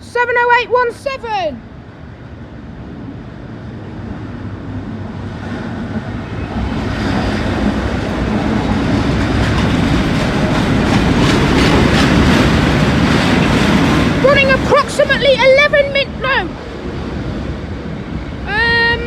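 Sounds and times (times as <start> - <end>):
diesel locomotive engine rumble: 0.0 - 19.0
wheels clacking over rail joints: 6.6 - 16.3.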